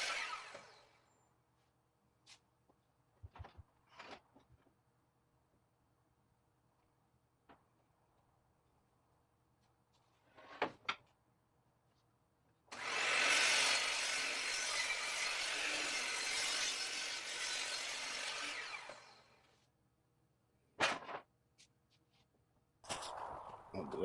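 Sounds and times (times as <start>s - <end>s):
power saw cutting wood: 0.0s - 1.0s, 12.7s - 19.4s.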